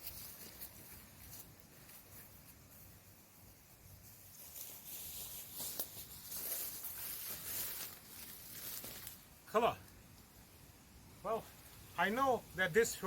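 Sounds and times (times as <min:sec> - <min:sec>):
faint rustling: 0:00.0 - 0:09.2.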